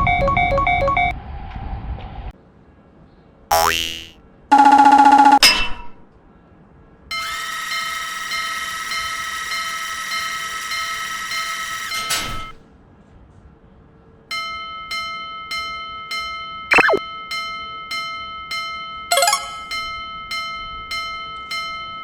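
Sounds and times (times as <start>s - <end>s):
level-crossing bell clanging: 19.1s - 22.0s.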